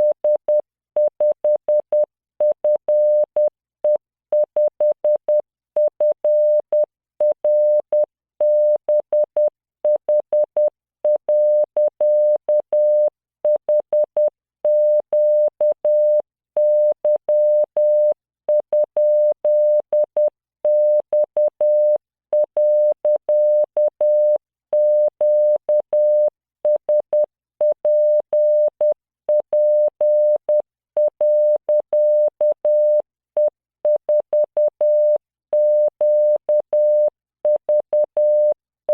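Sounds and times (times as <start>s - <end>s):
morse code tone: 34.1s - 37.1s, 37.7s - 38.9s.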